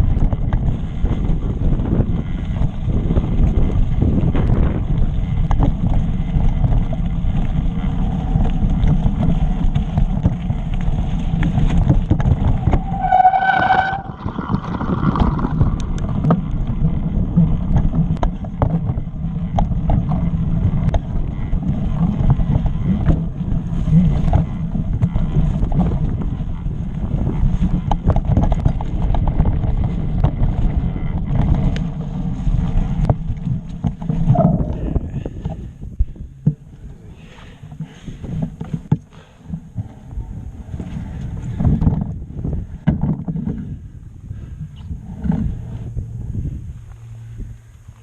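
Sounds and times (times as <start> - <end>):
bike rattling and knocking: 0.0 - 48.0
bike tyres rumbling on stony trail: 0.0 - 48.0
wind on microphone: 0.0 - 48.0
bike brakes squealing: 12.5 - 14.6.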